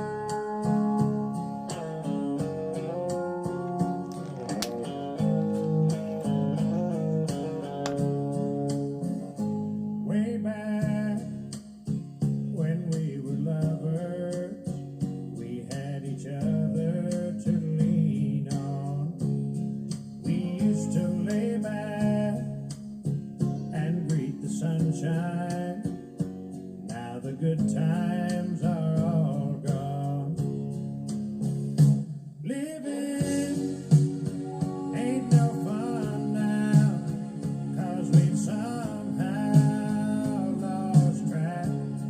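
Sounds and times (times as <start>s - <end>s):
person singing: 0.0s - 8.4s, 10.1s - 11.4s, 12.5s - 14.7s, 15.4s - 19.2s, 20.2s - 22.5s, 23.6s - 25.9s, 26.9s - 30.4s, 32.4s - 42.0s
strummed acoustic guitar: 0.0s - 42.0s.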